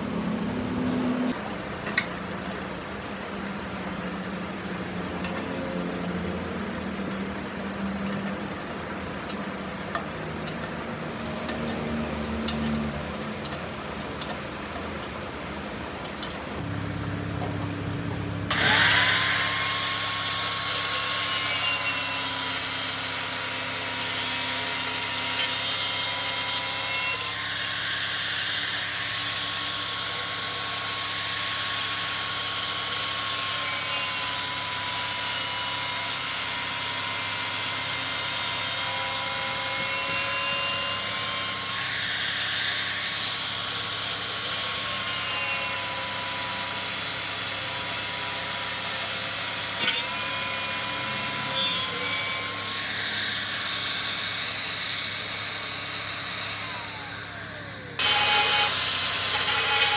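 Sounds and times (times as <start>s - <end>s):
power tool grinding metal: 18.5s - 59.9s
machine motor humming: 56.6s - 59.9s.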